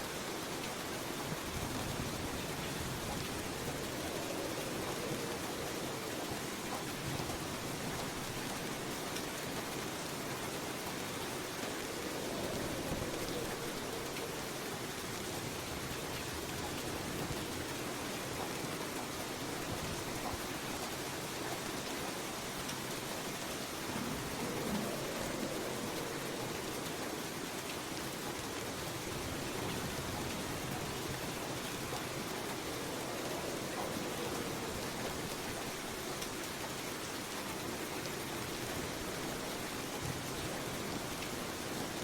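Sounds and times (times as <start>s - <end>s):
steady rain hiss: 0.0s - 42.0s.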